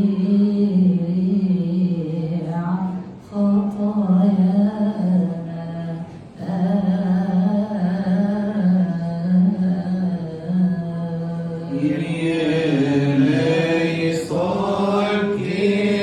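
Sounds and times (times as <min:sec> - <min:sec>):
man chanting: 0:11.6 - 0:16.0.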